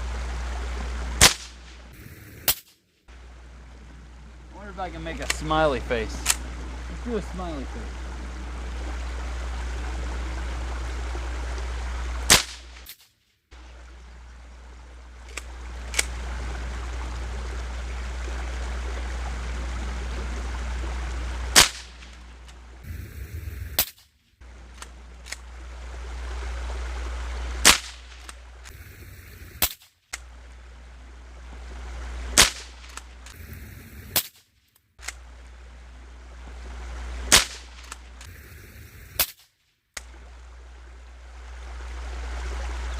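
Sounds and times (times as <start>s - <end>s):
rifle shots: 1.2s - 2.7s, 12.3s - 12.9s, 27.6s - 28.3s, 32.4s - 33.0s
rifle action clicks: 5.2s - 5.4s, 6.2s - 6.4s, 15.3s - 16.1s
low rumble: 13.6s - 23.8s, 28.3s - 29.6s, 30.3s - 34.2s.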